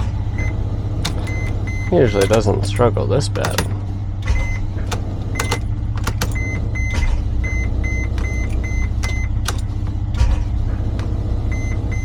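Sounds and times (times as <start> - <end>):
diesel engine cranking: 0.0 - 12.0
high beeps: 0.4 - 2.8, 4.3 - 4.6, 6.2 - 9.4, 11.5 - 12.0
sharp clicks: 1.0 - 7.1, 8.0 - 10.3.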